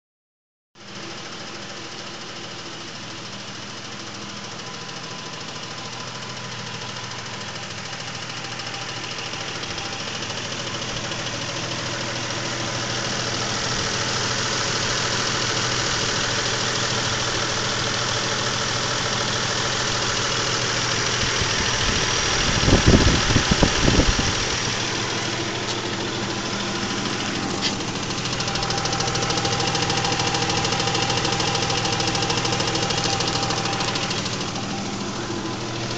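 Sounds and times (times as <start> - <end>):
engine idling with ticking knock: 0.8 - 35.9.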